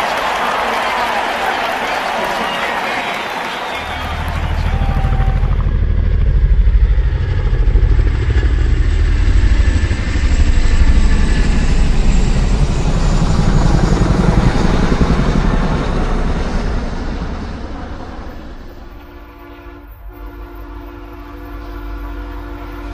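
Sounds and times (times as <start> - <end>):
vehicle engine pulsing: 3.8 - 19.1.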